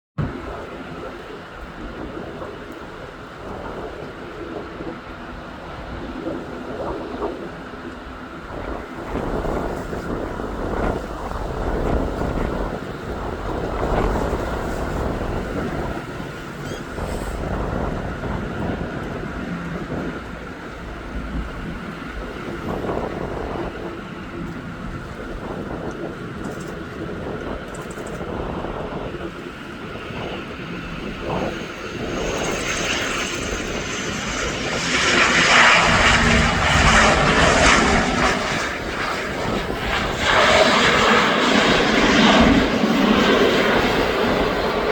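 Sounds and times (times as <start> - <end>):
propeller plane engines: 0.2 - 44.9
wind rumble on microphone: 0.2 - 44.9.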